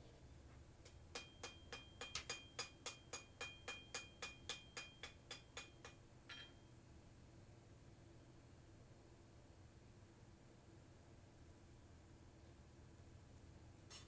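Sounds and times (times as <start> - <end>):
hammer tapping hot steel on anvil: 0.8 - 6.6.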